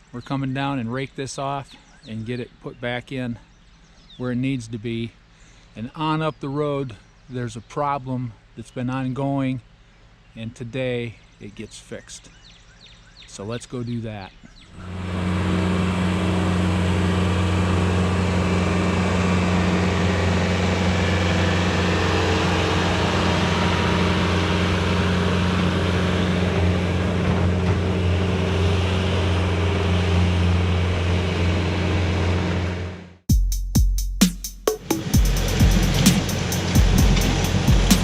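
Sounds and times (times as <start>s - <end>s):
skid steer engine running: 14.5s - 33.2s, 35.0s - 38.0s.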